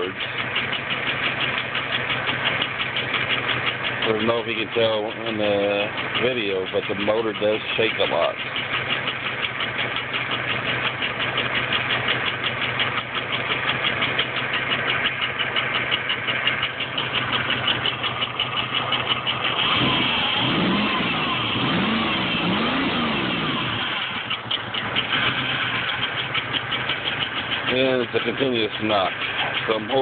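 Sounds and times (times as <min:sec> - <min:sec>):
car engine idling with knocking tick: 0:00.0 - 0:30.0.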